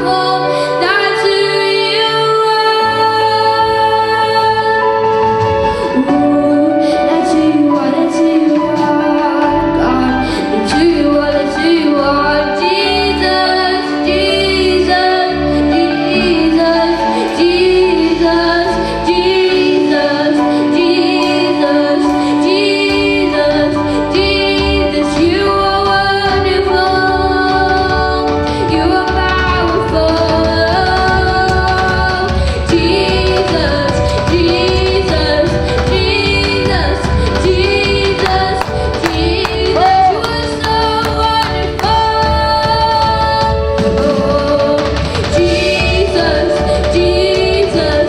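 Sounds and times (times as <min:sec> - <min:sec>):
band accompaniment with bass: 0:00.0 - 0:48.0
woman singing: 0:00.0 - 0:48.0.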